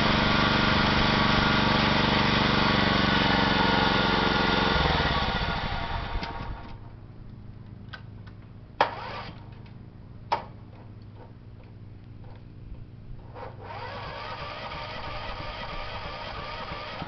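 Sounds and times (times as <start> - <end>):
lawn mower engine running: 0.0 - 9.8, 13.2 - 17.0.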